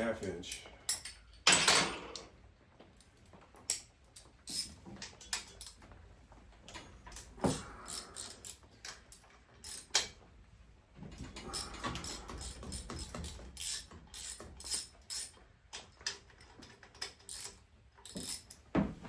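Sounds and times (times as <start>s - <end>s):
metallic clinks of hand tools: 7.4s - 10.0s, 11.5s - 15.4s
ratchet clicking on bolts: 7.4s - 10.1s, 11.5s - 15.4s, 17.3s - 18.5s.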